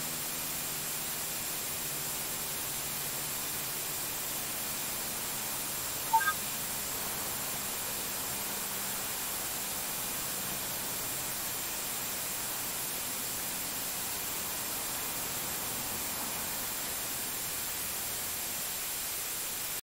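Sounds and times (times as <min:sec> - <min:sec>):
steady static hiss: 0:00.0 - 0:19.8
faint high whine: 0:06.1 - 0:06.4.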